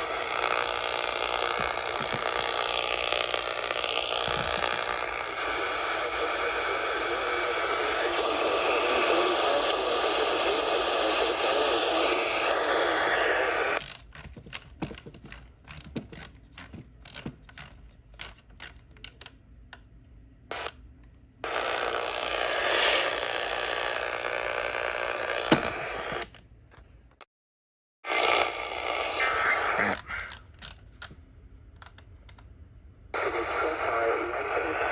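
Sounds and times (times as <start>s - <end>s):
radio static hiss: 0.0s - 14.0s, 20.5s - 20.8s, 21.4s - 26.4s, 28.0s - 30.5s, 33.1s - 34.9s
quick mechanical clicks and rattles: 13.8s - 19.4s, 30.0s - 31.2s.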